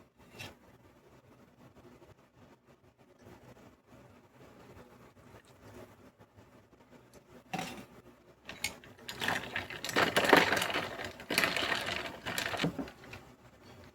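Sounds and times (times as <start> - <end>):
ice cubes clinking in a glass: 8.5 - 13.2.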